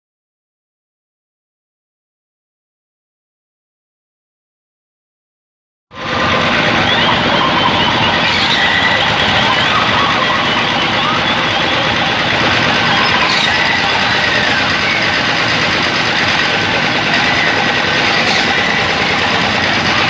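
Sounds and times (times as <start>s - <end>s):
loud machine drone: 5.9s - 20.0s.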